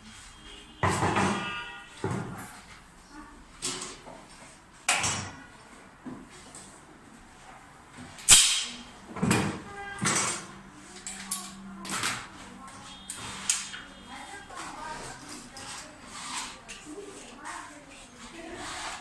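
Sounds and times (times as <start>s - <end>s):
knocks and scrapes: 12.0s - 19.0s.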